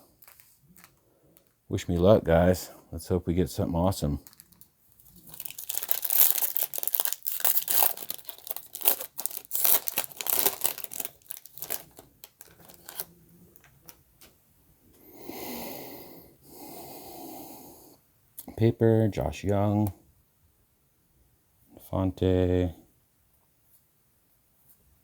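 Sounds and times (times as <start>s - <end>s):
foil wrapper tearing and crinkling: 0.0s - 1.6s, 4.2s - 14.0s
soft smooth rustles: 23.6s - 25.0s.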